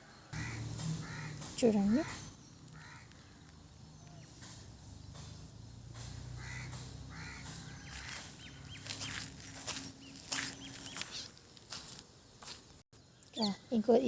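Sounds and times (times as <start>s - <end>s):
crow cawing: 0.3s - 4.4s, 6.3s - 9.7s.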